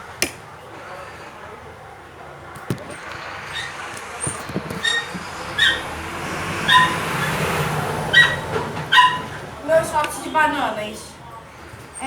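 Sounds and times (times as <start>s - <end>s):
steady rushing noise: 2.2s - 8.0s
small dog yelping: 4.8s - 5.9s, 6.6s - 7.0s, 8.1s - 9.4s.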